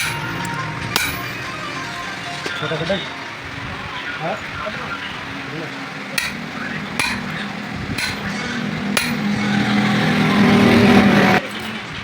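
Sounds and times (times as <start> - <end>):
hammer blows on metal: 0.0 - 1.7, 6.2 - 10.1
steady mechanical hum: 0.0 - 12.0.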